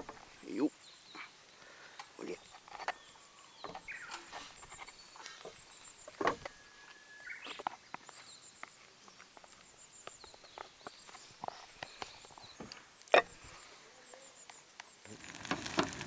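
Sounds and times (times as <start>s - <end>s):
outdoor ambience: 0.0s - 16.0s.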